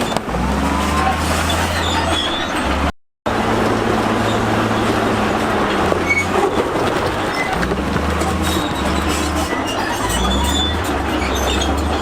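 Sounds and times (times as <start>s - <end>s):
metallic grinding and squealing: 0.0s - 2.9s, 5.7s - 12.0s
diesel engine drone: 0.0s - 12.0s.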